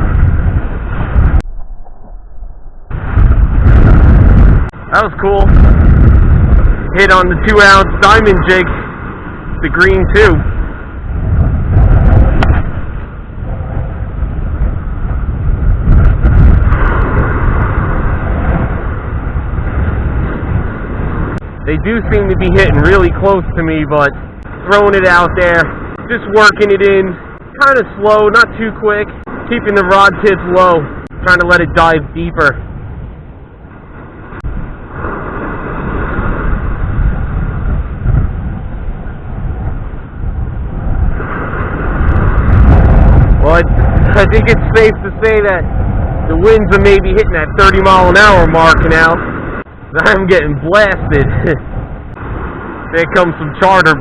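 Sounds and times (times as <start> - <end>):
surf washing: 0.0 - 54.0
wind buffeting microphone: 0.0 - 54.0.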